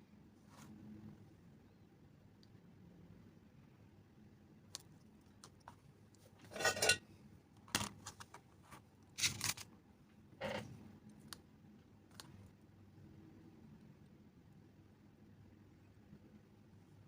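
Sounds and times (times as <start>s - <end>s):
tools scraping on work surface: 6.4s - 7.0s.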